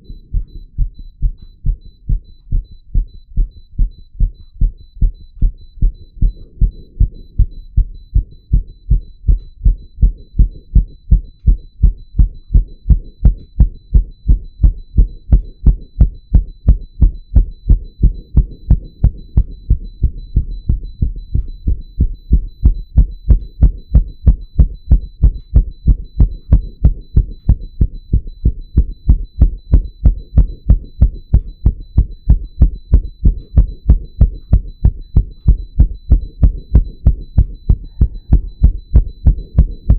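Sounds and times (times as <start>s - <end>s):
fast heartbeat thuds: 0.0s - 39.9s.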